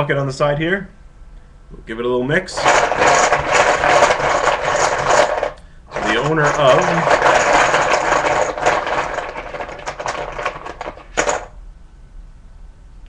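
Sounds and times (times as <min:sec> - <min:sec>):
poker chips clattering in bucket: 0:02.5 - 0:11.5.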